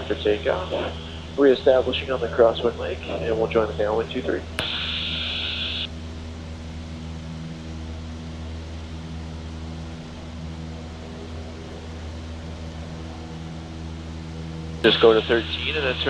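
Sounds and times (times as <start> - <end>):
radio hiss: 0.0 - 1.3, 4.6 - 5.9, 14.8 - 16.0
propeller engine droning: 0.0 - 16.0.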